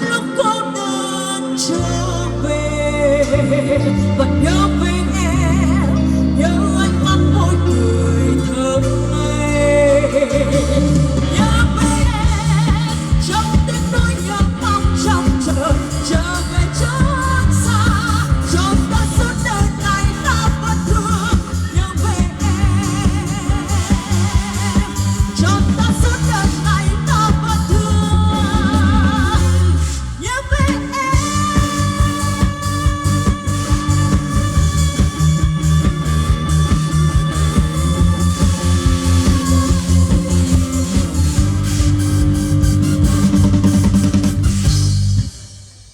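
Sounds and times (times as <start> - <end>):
woman singing pop song: 0.0 - 41.2
backing track with bass and beat: 1.7 - 45.9.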